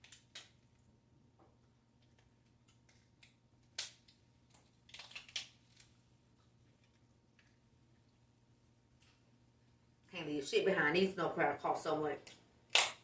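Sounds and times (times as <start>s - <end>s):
crab shell cracking: 0.0s - 0.8s, 2.0s - 7.6s.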